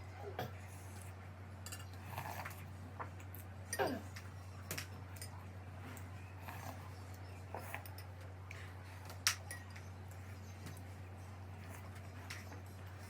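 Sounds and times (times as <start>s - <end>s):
steady low hum: 0.0s - 13.0s
spoon and dishes clinking: 1.6s - 2.2s, 9.2s - 10.5s.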